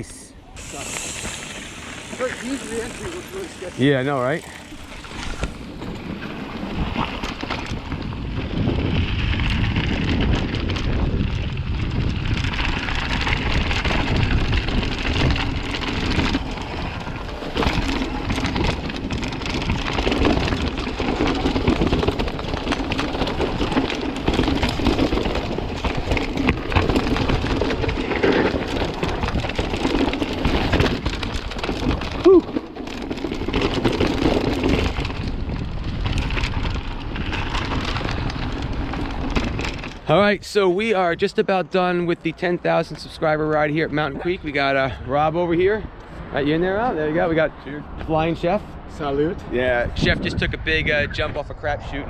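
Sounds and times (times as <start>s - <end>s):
bike rattling and clicking: 0.0s - 48.4s
wind: 0.0s - 52.0s
tyre rumble: 0.5s - 40.2s.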